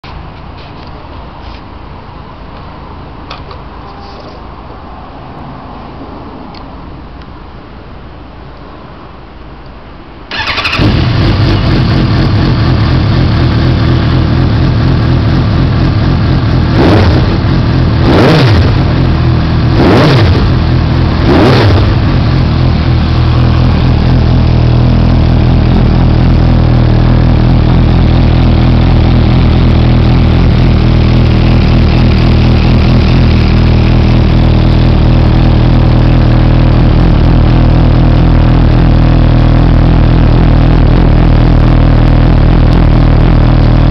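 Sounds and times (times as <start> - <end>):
motorcycle engine idling: 10.3 - 43.9
motorcycle throttle blips: 10.3 - 43.9.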